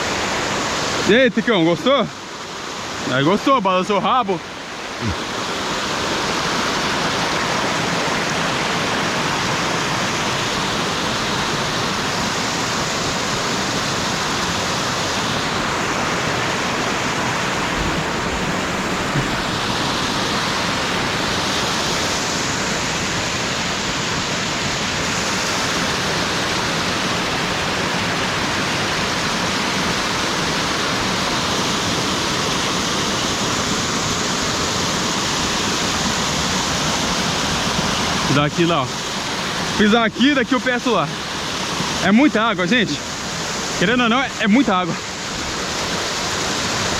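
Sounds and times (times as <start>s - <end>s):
waterfall roaring: 0.0s - 46.9s.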